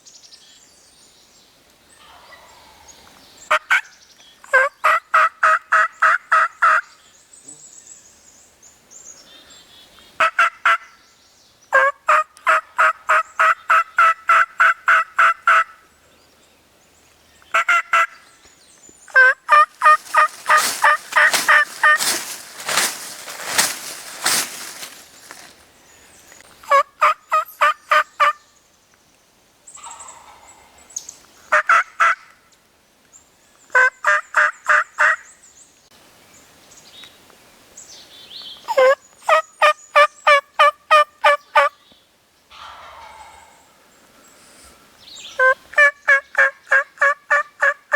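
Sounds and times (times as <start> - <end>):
wild turkey yelping: 19.2 - 22.2, 29.8 - 30.7, 38.7 - 41.7, 42.5 - 43.8, 45.4 - 47.8.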